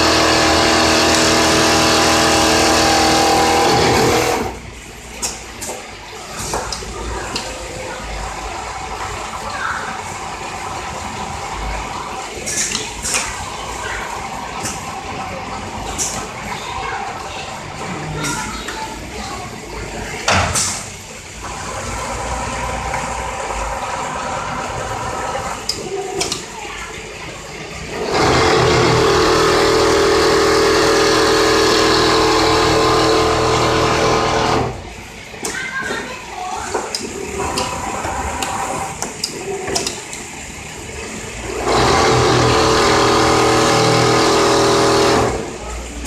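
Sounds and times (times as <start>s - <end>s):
sewing machine running: 0.0s - 5.0s, 21.4s - 26.4s, 27.2s - 35.3s, 37.0s - 46.0s.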